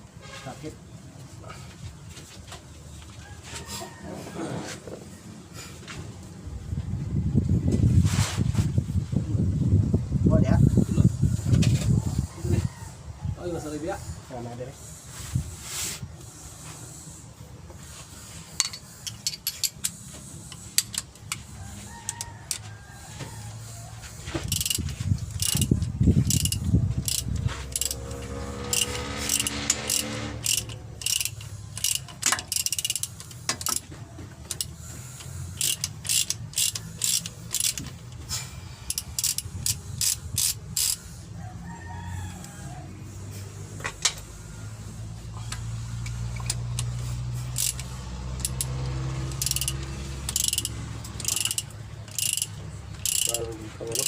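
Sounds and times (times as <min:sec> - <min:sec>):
ratchet wrench clicking: 0:18.6 - 0:22.7, 0:24.4 - 0:41.2, 0:45.5 - 0:54.0.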